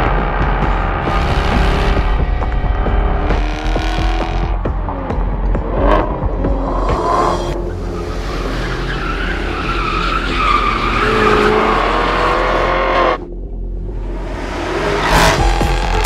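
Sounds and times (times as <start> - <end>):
tyres squealing: 7.9 - 12.2.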